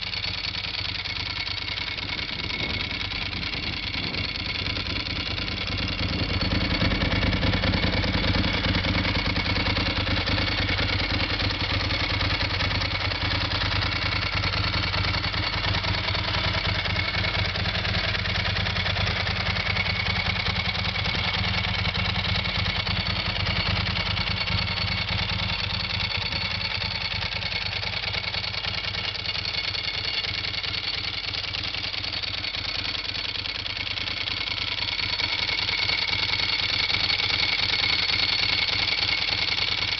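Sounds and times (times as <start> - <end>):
motorcycle engine idling: 0.0 - 39.9.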